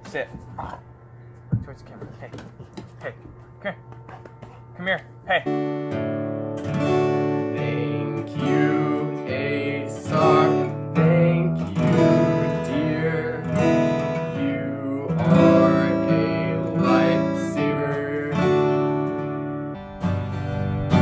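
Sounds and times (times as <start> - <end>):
strummed acoustic guitar: 5.4 - 21.0.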